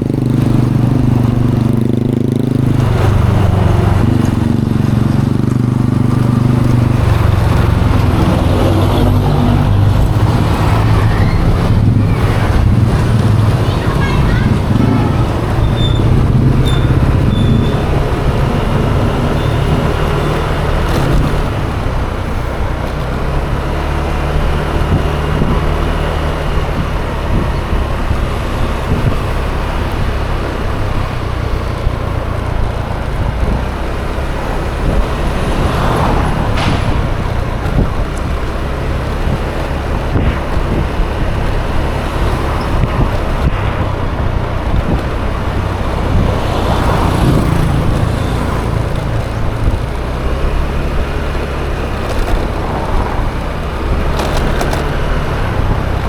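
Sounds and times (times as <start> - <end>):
scooter engine running: 0.0 - 56.0
surrounding traffic: 0.0 - 56.0.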